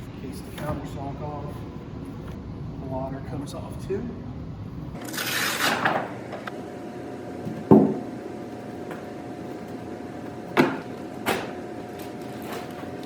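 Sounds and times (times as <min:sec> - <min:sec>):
sharp knocks: 0:07.5 - 0:08.1, 0:10.6 - 0:11.6.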